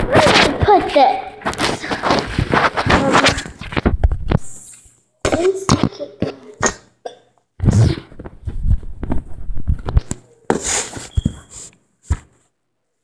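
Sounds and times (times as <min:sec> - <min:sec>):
person hiccuping: 0:06.0 - 0:07.9.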